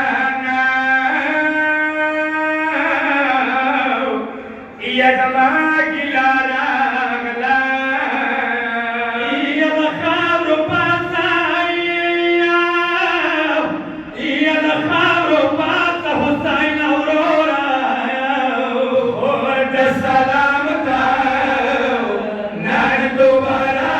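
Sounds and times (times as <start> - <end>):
man chanting a lament: 0.0 - 23.9.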